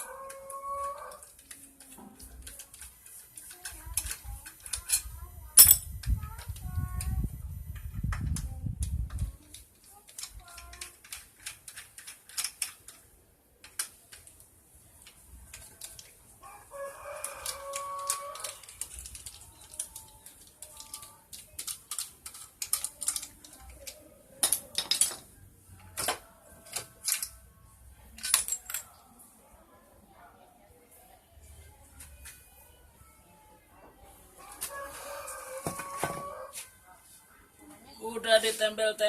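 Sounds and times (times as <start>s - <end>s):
rooster crowing: 0.0s - 1.3s, 16.4s - 18.6s, 34.4s - 36.6s
hand tools clinking on metal parts: 0.0s - 6.1s, 17.2s - 27.4s, 28.1s - 29.0s.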